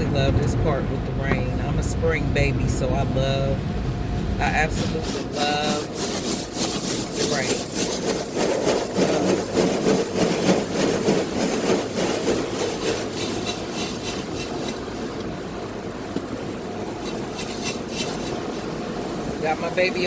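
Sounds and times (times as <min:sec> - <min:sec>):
water spraying on car: 0:00.0 - 0:20.0
car wash brushes swishing: 0:04.4 - 0:20.0.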